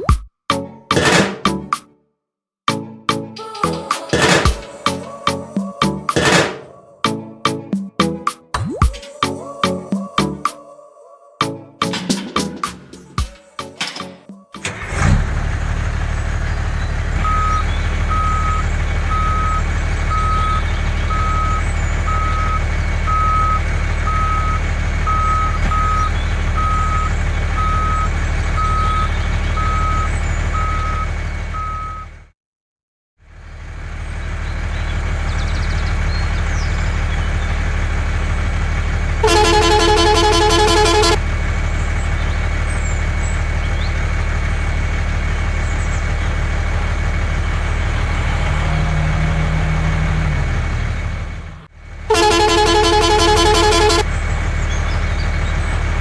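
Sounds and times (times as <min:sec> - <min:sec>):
truck engine running: 0:11.9 - 0:13.9, 0:14.6 - 0:32.3, 0:33.2 - 0:56.0
reversing alarm beeping: 0:17.2 - 0:32.2, 0:39.2 - 0:41.2, 0:52.1 - 0:54.1
truck horn: 0:39.2 - 0:41.3, 0:47.5 - 0:54.1.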